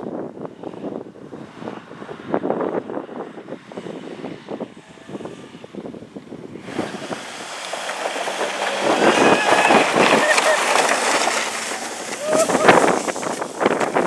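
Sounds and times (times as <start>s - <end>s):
rush of approaching car: 0.6s - 14.0s
race car rattling clatter: 6.4s - 14.0s.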